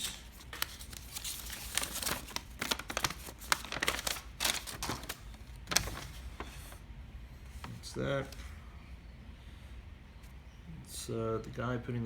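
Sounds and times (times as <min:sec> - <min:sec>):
paper rustling and crinkling: 0:00.0 - 0:06.8.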